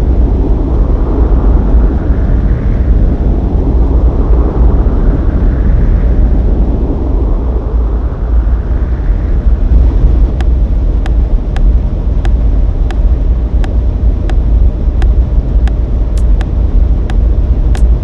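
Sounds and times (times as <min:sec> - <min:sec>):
loud low rumble: 0:08.9 - 0:18.0
sharp regular clicks: 0:15.0 - 0:16.6.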